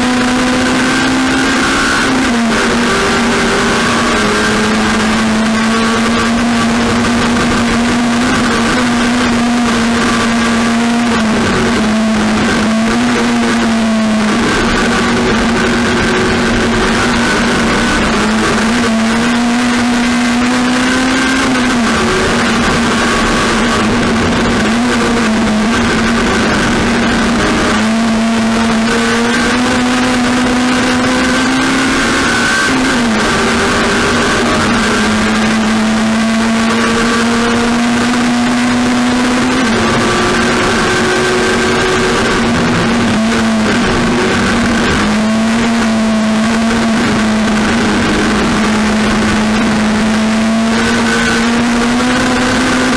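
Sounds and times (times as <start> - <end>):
race car engine at high revs: 0.0 - 52.9.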